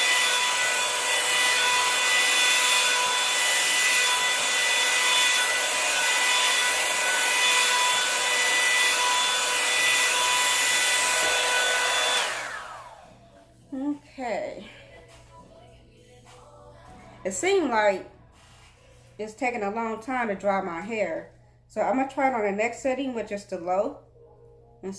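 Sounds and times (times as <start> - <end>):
hair dryer blowing air: 0.0 - 13.4.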